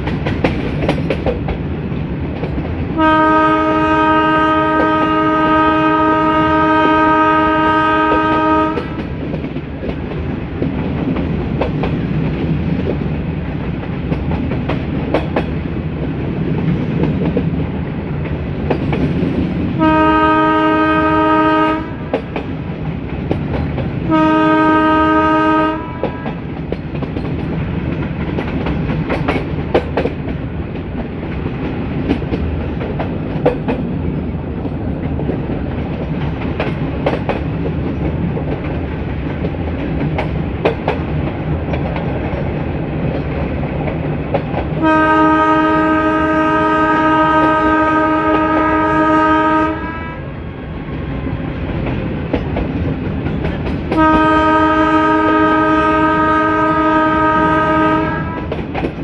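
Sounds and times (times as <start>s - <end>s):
train rumble: 0.0s - 59.0s
locomotive horn blasts: 3.0s - 9.0s, 19.8s - 22.2s, 24.1s - 26.4s, 44.8s - 50.4s, 53.9s - 58.6s.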